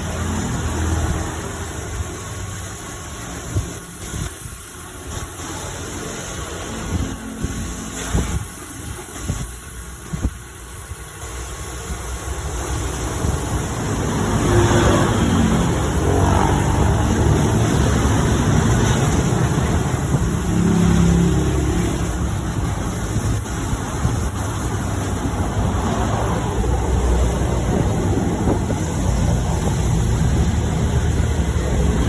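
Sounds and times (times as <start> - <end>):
car engine accelerating: 13.2 - 32.0.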